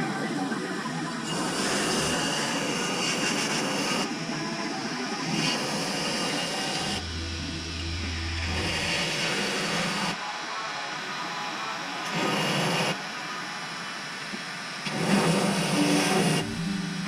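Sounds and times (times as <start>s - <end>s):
low steady hum: 6.8s - 10.2s, 15.7s - 17.0s.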